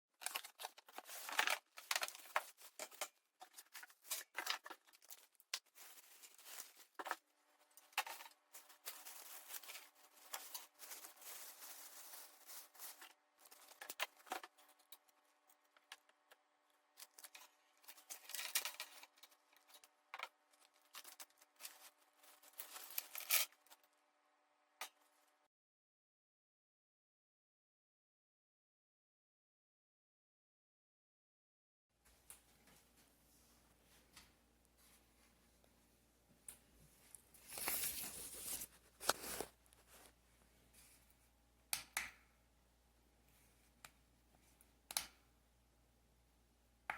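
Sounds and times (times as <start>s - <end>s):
packaging rustling and tearing: 0.2s - 14.7s, 20.6s - 23.8s, 37.4s - 40.1s.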